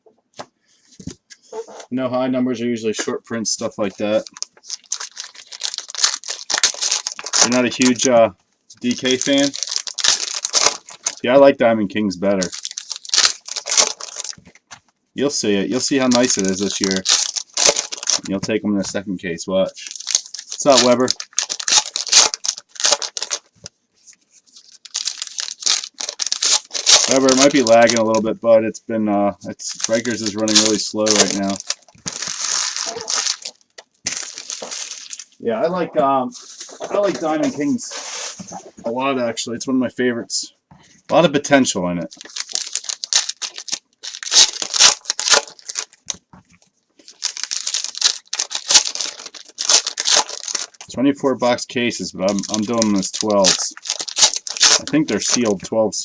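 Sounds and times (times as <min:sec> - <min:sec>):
packaging tearing and crinkling: 0:04.0 - 0:08.1, 0:08.8 - 0:11.2, 0:12.4 - 0:14.6, 0:15.7 - 0:18.4, 0:19.8 - 0:23.5, 0:24.6 - 0:28.2, 0:29.6 - 0:35.4, 0:42.1 - 0:46.2, 0:47.0 - 0:50.9, 0:52.3 - 0:55.6.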